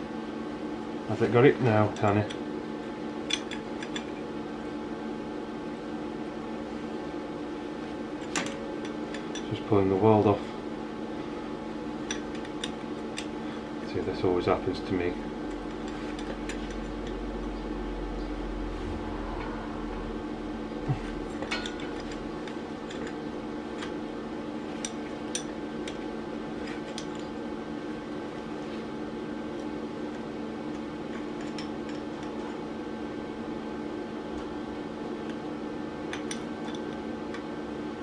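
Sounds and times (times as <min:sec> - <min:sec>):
steady machine hum: 0:02.2 - 0:26.7.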